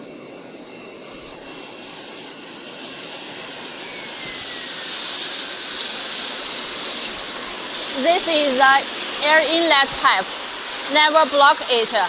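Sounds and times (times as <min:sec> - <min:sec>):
air blower bubbling water: 0:00.0 - 0:12.0.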